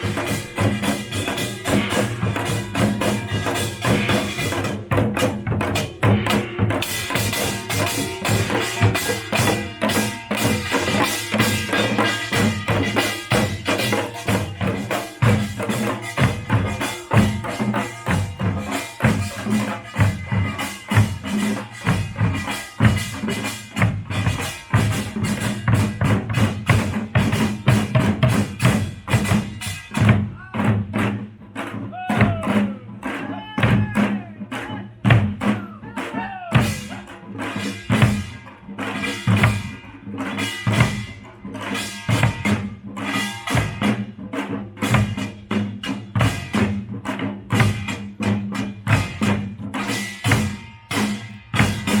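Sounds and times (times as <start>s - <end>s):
metal gongs clanging: 0.0s - 30.1s
drums beaten in driving rhythm: 0.0s - 52.0s.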